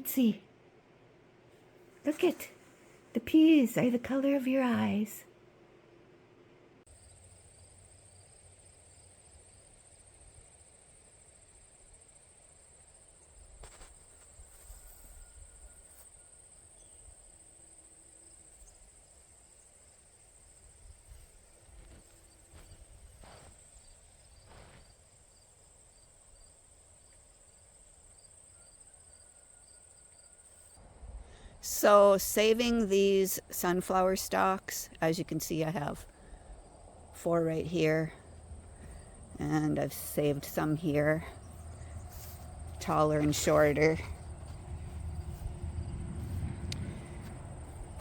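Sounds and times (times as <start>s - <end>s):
crickets chirping: 6.9s - 31.6s, 34.8s - 48.0s
low rumble: 41.2s - 48.0s.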